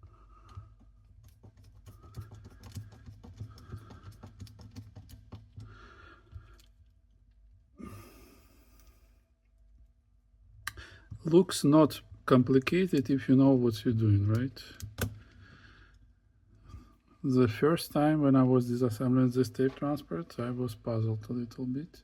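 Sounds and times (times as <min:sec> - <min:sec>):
small clicks and taps of tools: 0:14.2 - 0:15.4.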